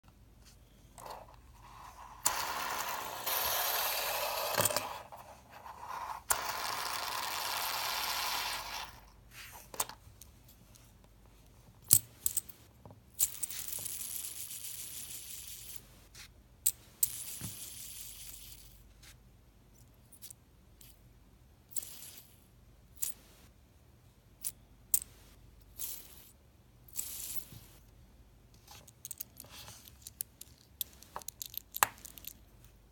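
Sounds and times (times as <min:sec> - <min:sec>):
fidget spinner bearing whirring: 0:01.1 - 0:09.0.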